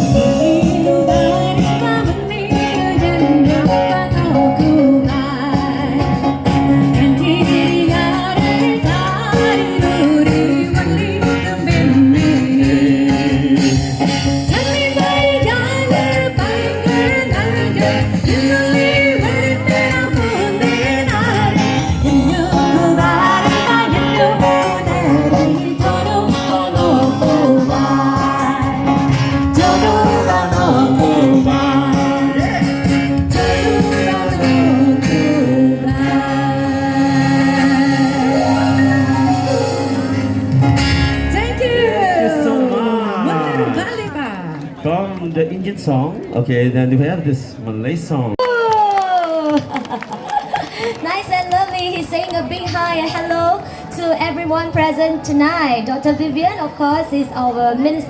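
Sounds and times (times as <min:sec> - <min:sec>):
man singing over instrumental backing: 0:29.5 - 0:39.6.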